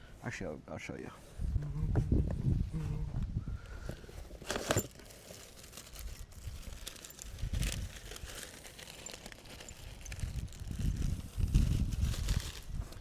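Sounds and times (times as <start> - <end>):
rustling crinkling handling: 4.0 - 13.0.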